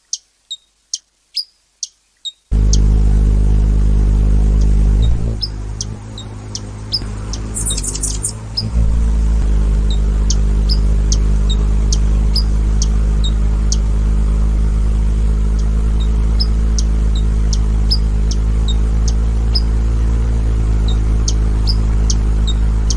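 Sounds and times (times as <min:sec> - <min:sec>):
hummingbird wing buzz: 0:02.5 - 0:22.9
short high chirps: 0:07.3 - 0:08.8.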